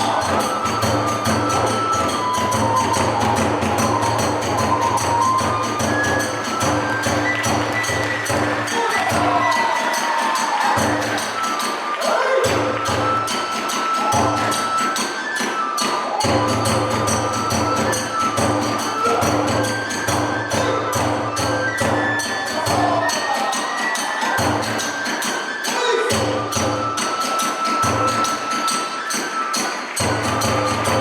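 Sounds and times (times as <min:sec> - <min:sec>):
bamboo flute shrill notes: 0:00.0 - 0:31.0.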